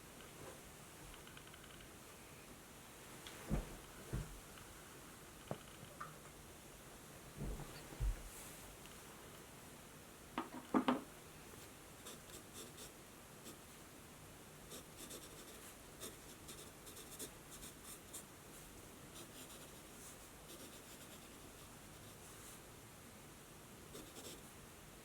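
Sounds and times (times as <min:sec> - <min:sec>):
pen scratching on paper: 0:14.7 - 0:18.2.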